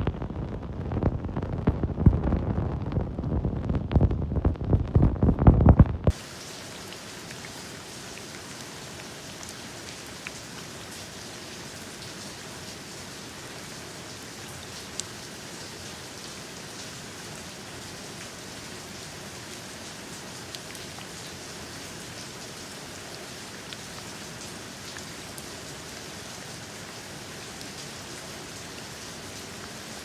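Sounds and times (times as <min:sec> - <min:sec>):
low gusty rumble: 0:00.0 - 0:06.1
raindrops ticking: 0:00.0 - 0:10.6
steady rain: 0:00.0 - 0:30.0.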